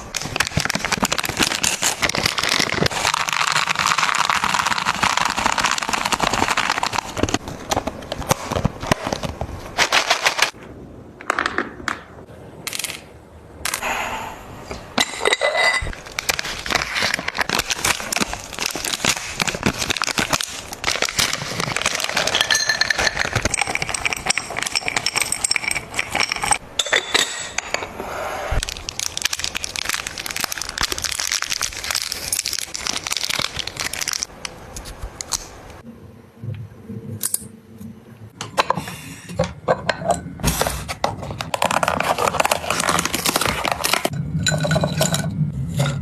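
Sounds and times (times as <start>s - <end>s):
plastic packaging crinkling: 0.0s - 10.6s, 15.9s - 26.6s, 28.5s - 35.4s, 41.2s - 44.1s.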